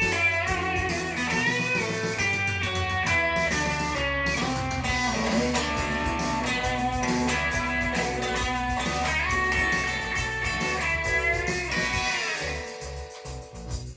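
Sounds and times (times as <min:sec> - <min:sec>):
blues electric guitar lead: 0:00.0 - 0:13.9.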